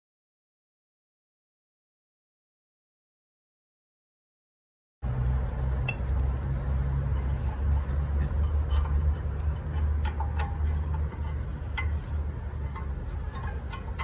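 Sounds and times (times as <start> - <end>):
steady low hum: 5.0 - 14.0.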